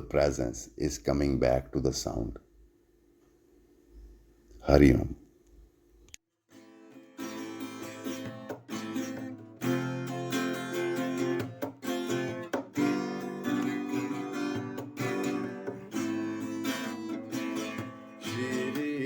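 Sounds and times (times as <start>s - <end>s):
acoustic guitar strumming chords: 6.5s - 19.0s.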